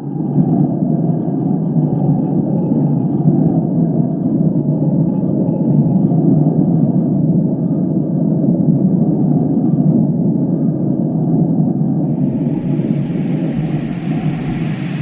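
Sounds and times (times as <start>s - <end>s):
tornado wind roaring: 12.0s - 15.0s
rushing hiss: 12.1s - 15.0s.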